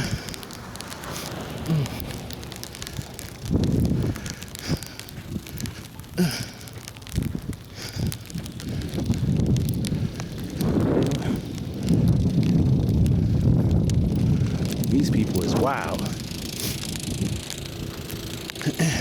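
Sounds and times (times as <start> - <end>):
footsteps crunching in snow: 0.0 - 12.4
wind buffeting microphone: 0.0 - 19.0.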